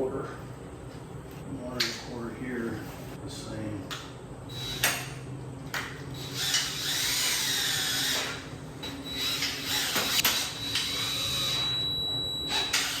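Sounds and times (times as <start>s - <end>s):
power drill driving screws: 6.2s - 8.4s, 9.1s - 11.7s.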